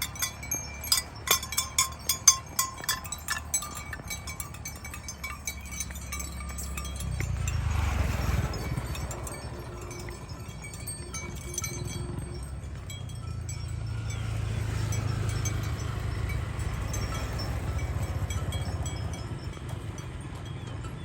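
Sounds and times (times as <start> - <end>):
cowbells clanking: 0.0 - 21.0.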